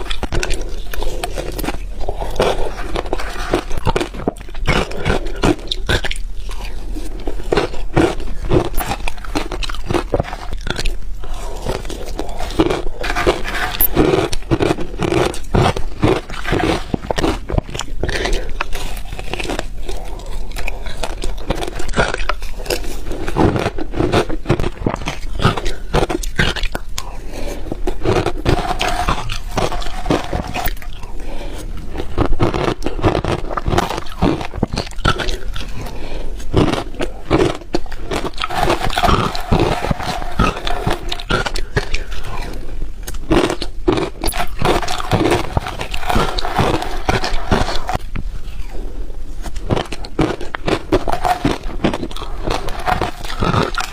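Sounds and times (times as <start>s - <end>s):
person crunching ice: 0.0s - 48.0s, 49.4s - 53.9s.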